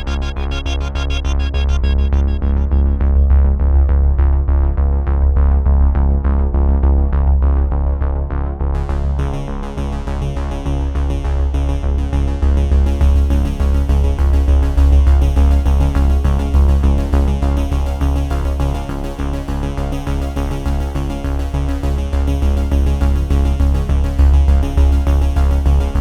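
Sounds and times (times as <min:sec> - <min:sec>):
bright high synth layer: 0:00.0 - 0:03.2
electronic music with heavy bass: 0:00.0 - 0:04.5.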